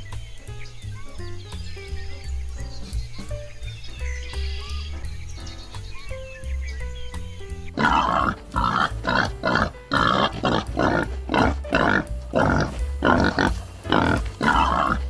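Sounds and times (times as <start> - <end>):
background music with held notes: 0.0 - 15.0
animal making harsh calls: 7.8 - 15.0.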